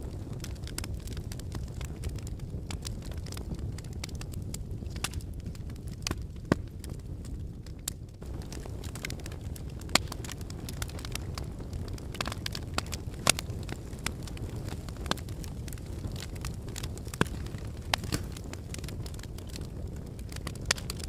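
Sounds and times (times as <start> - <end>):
fire crackles and pops: 0.0 - 21.0
fire low rumble: 0.0 - 21.0.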